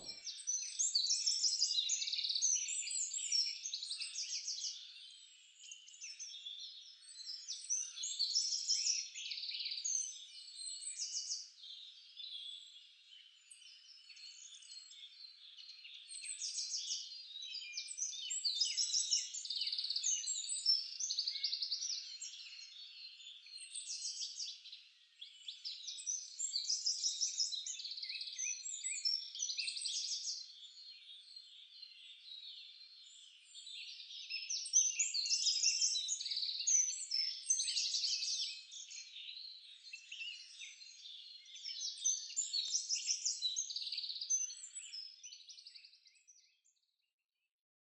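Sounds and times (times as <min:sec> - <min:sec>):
songbirds chorus: 0:00.0 - 0:09.2.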